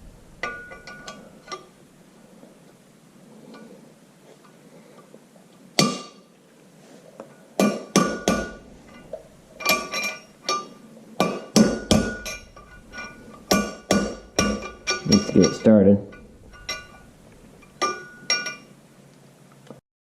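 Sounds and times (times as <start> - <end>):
hammer ringing on steel: 8.0 - 8.6.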